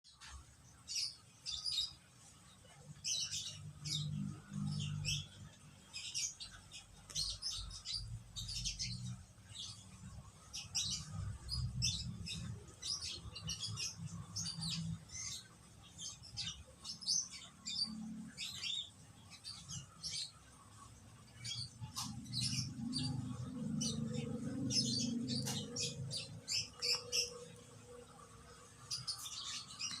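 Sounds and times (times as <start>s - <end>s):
small animals chirping and squeaking: 21.4s - 27.6s.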